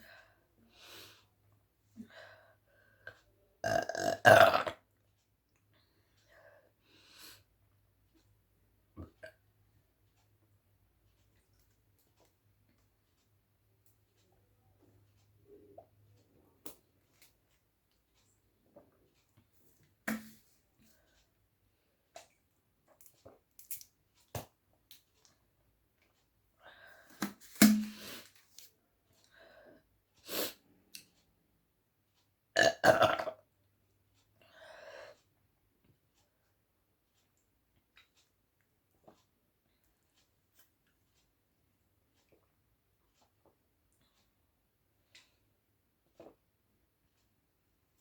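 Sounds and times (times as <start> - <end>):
woman burping loudly: 3.6 - 4.8, 32.6 - 33.4.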